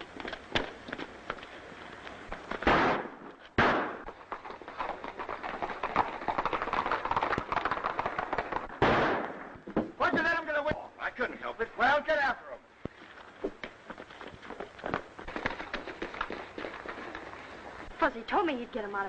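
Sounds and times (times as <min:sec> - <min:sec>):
gunshots: 0:02.6 - 0:04.2, 0:08.6 - 0:09.6.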